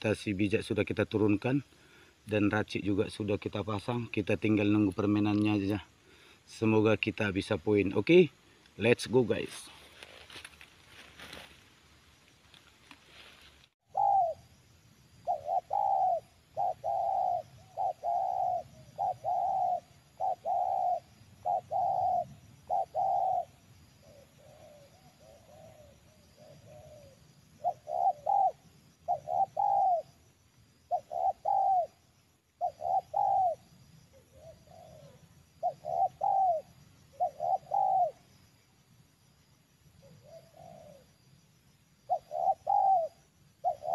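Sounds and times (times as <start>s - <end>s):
dove cooing: 13.8s - 14.5s, 15.2s - 30.2s, 30.9s - 38.3s, 40.0s - 41.2s, 42.1s - 43.9s.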